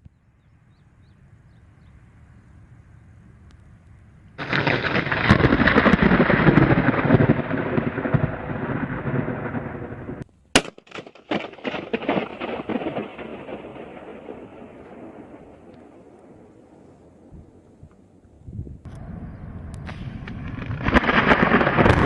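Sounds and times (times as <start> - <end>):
loud crackling rumble: 2.6 - 22.0
sharp cracks: 4.4 - 16.5, 19.8 - 22.0.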